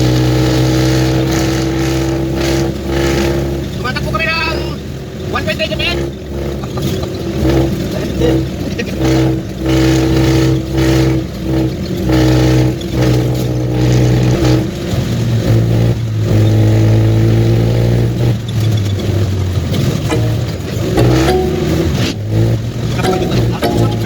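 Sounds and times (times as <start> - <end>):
vehicle engine running: 0.0 - 16.9, 17.8 - 24.0.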